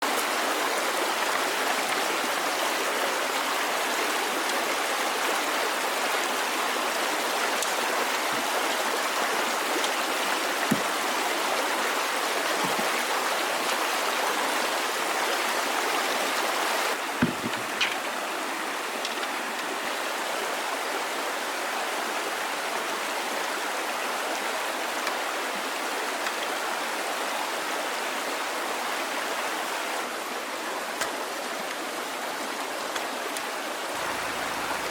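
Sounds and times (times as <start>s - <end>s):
flowing water rushing: 0.0s - 34.9s
faint knocks: 17.2s - 18.1s.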